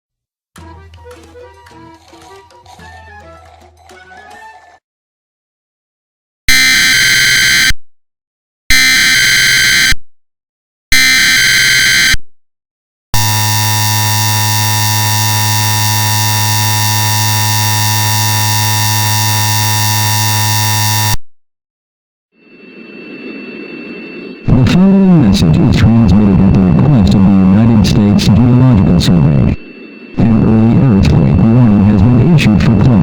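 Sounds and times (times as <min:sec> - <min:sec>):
data bursts: 0:13.2 - 0:21.2
steady attention tone: 0:13.2 - 0:21.2, 0:22.4 - 0:32.3.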